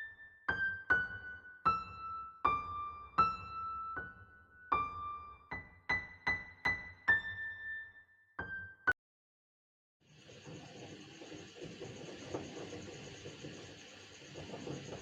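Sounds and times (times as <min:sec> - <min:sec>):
slow piano-like melody: 0:00.0 - 0:09.0.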